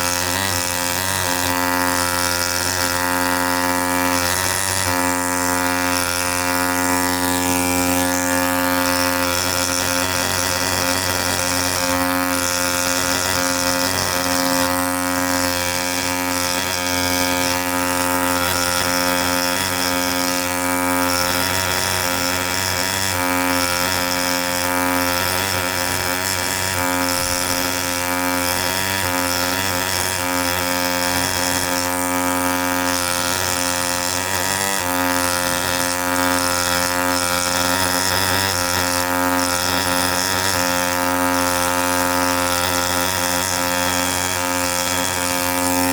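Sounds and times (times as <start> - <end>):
pneumatic air scribe buzzing: 44.5 - 45.9.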